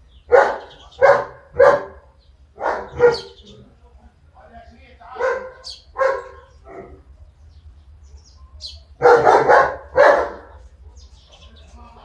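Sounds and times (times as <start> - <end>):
dog barking: 0.3 - 3.4, 5.1 - 7.2, 8.7 - 11.2.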